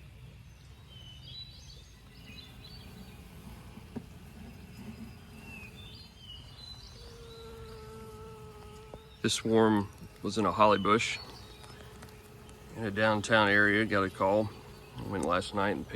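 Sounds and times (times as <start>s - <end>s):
birds chirping: 0.0s - 15.9s
bee swarm buzzing: 2.0s - 15.9s.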